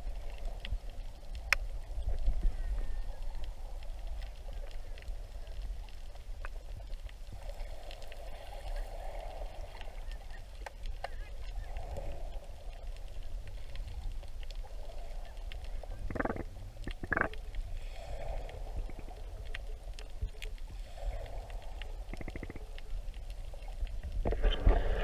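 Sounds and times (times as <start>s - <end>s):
faint underwater clicks and crackles: 0.0s - 25.0s
underwater low rumble: 0.0s - 25.0s.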